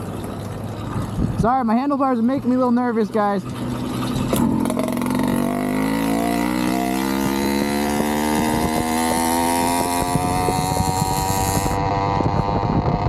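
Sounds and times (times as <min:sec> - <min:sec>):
two-stroke engine accelerating: 0:03.4 - 0:13.0.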